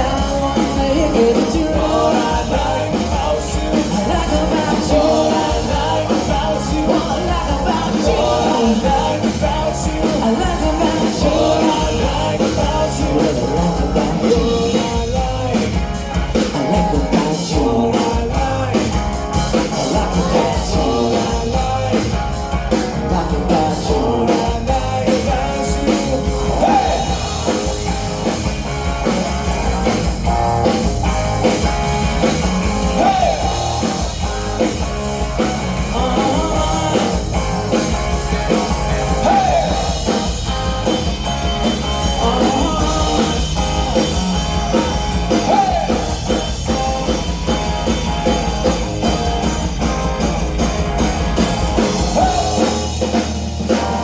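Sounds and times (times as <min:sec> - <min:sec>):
drum kit: 0:00.0 - 0:54.0
electric guitar: 0:00.0 - 0:54.0
live rock band playing: 0:00.0 - 0:54.0.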